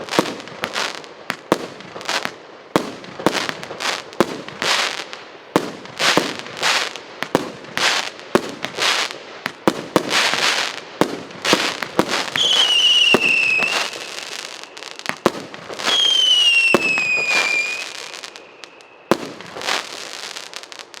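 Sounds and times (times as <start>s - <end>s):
firework shots crackling: 0.0s - 21.0s
firework whistles: 11.4s - 21.0s.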